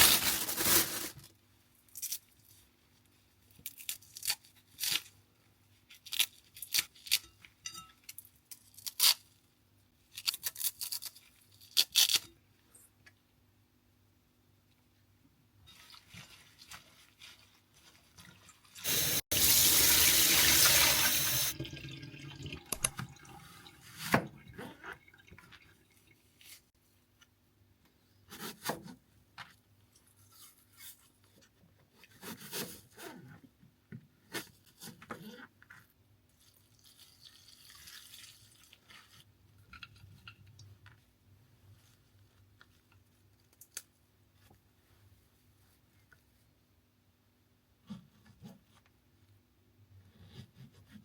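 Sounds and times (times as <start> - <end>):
water tap running: 18.8 - 24.0.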